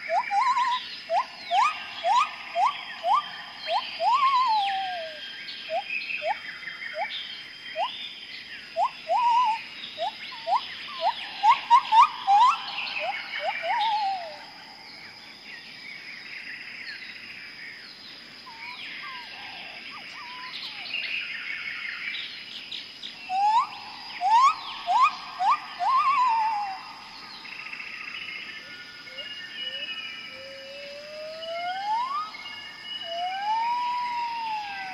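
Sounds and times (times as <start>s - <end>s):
bird rising whistles: 0.0s - 6.4s, 8.8s - 14.4s, 23.3s - 26.8s, 31.3s - 34.9s
birds chirping and trilling: 0.0s - 34.9s.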